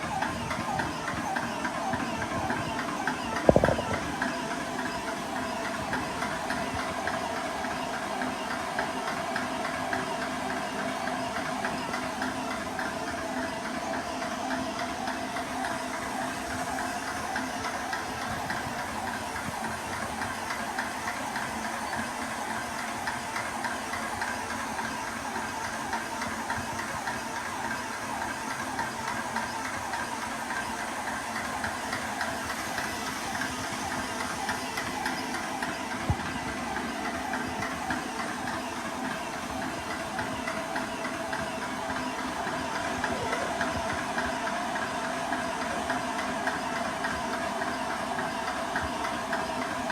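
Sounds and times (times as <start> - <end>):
air compressor motor drone: 0.0 - 49.9.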